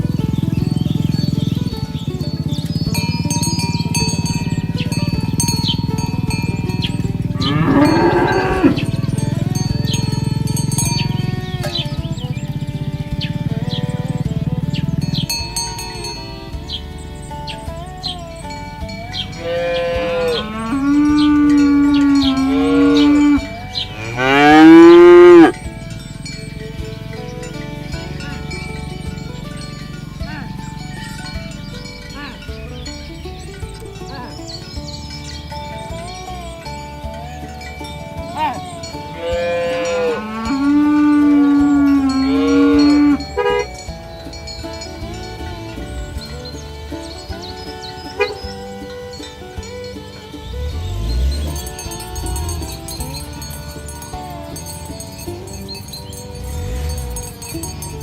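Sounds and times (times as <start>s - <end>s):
cattle mooing: 7.3s - 10.1s, 19.4s - 25.6s, 38.3s - 43.7s.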